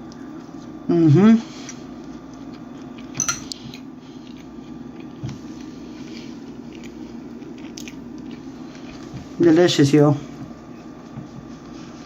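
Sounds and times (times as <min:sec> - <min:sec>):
person chewing food: 0:01.5 - 0:09.4.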